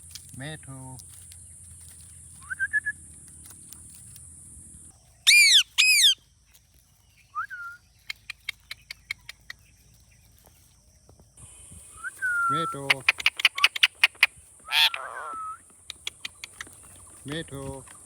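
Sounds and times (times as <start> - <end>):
parakeet chirps: 5.3 - 6.2, 12.0 - 16.7
parakeet screeches: 5.3 - 6.2, 14.7 - 15.6
rising whistle: 12.0 - 12.6
sharp clicks: 15.7 - 18.0.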